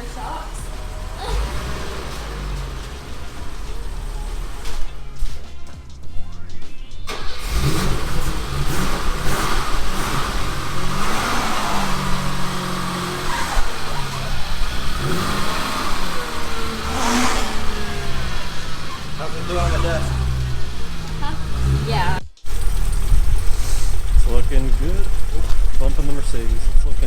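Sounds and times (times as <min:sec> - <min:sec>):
background music: 0:00.0 - 0:09.3, 0:15.2 - 0:22.5
car engine revving: 0:00.0 - 0:27.0.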